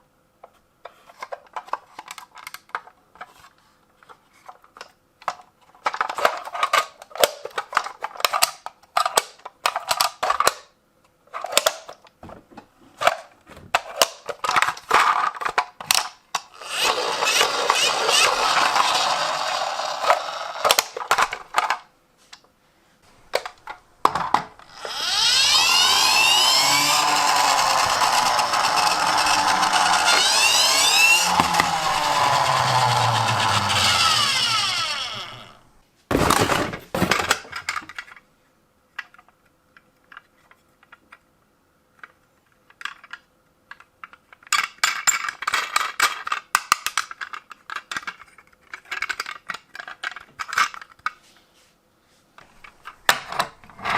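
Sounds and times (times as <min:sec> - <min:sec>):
plastic clicks and rattles: 0:01.0 - 0:03.4, 0:04.0 - 0:10.7, 0:23.3 - 0:35.3, 0:41.9 - 0:51.2
toy siren whirring: 0:16.6 - 0:20.8, 0:24.7 - 0:35.6.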